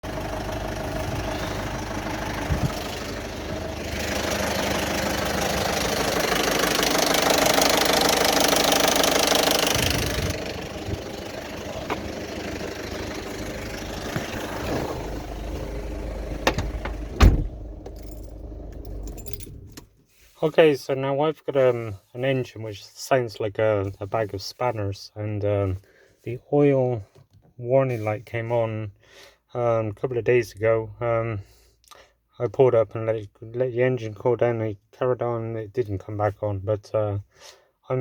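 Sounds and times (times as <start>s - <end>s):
diesel engine clattering: 0.0s - 19.8s
sharp thump: 16.4s - 17.6s.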